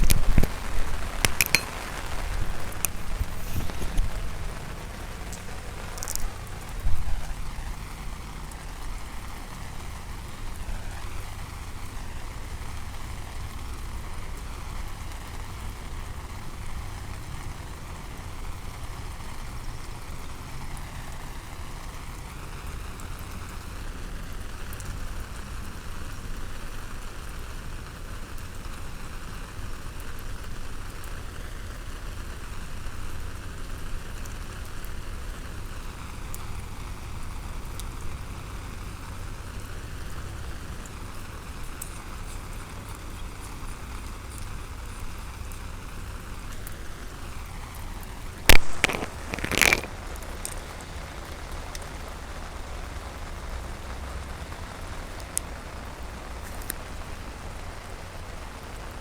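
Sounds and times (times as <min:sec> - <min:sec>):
constant low rumble: 0:00.0 - 0:23.7
steady rain falling: 0:00.0 - 0:59.0.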